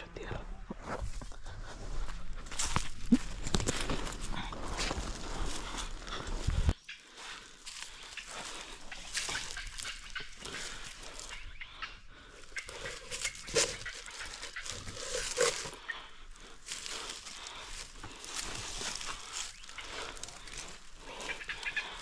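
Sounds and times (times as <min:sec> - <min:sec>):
brush and leaves rustling: 0:00.8 - 0:22.0
twigs snapping: 0:02.5 - 0:05.6, 0:12.5 - 0:15.8.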